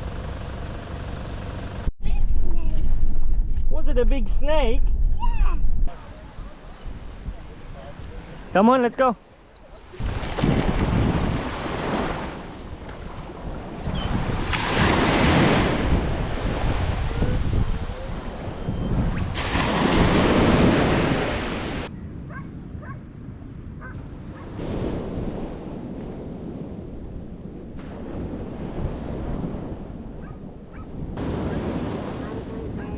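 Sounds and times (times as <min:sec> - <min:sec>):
wind buffeting microphone: 0:02.0 - 0:08.6, 0:09.2 - 0:32.9
ocean surf breaking: 0:09.8 - 0:21.9, 0:31.1 - 0:32.9.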